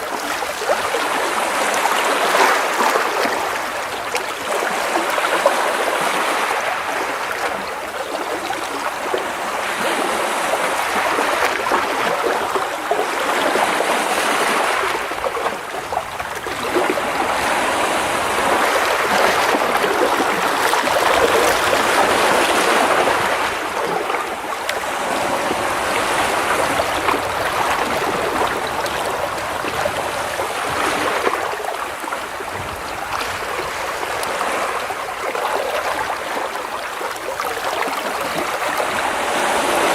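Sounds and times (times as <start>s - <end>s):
sea waves washing against rocks: 0.0s - 39.9s.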